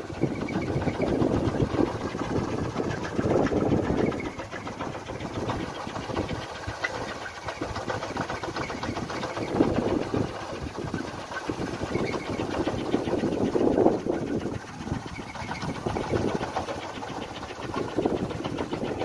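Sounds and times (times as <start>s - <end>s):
wooden windmill rattling drone: 0.0s - 19.0s.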